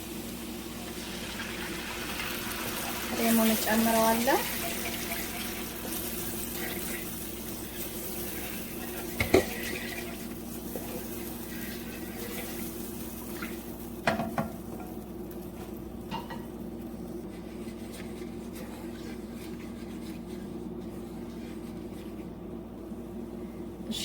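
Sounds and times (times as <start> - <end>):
steady low hum: 5.4 - 24.0.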